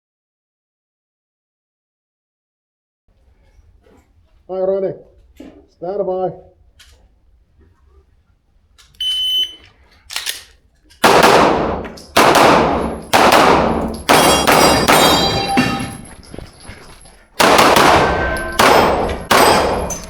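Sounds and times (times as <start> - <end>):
shot timer beep: 9.0 - 9.6
pistol shots: 10.1 - 15.8, 17.4 - 20.0
thin ringing tones: 13.9 - 17.4, 18.0 - 20.0.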